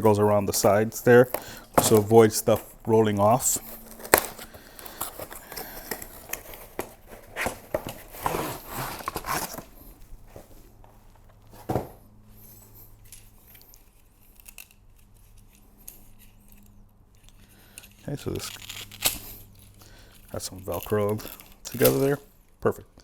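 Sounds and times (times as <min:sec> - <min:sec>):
fabric rustling and crinkling: 0:00.0 - 0:12.6.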